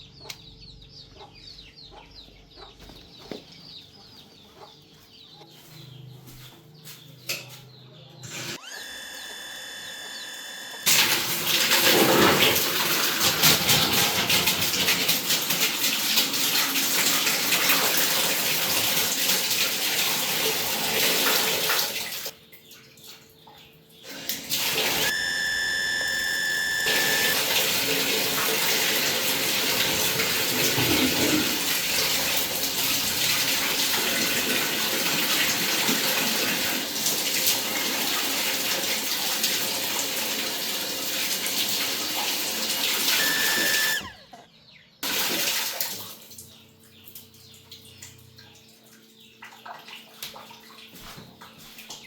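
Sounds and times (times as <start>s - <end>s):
water gushing from a tap: 10.9s - 22.3s, 24.1s - 25.1s, 26.9s - 43.9s, 45.0s - 46.5s.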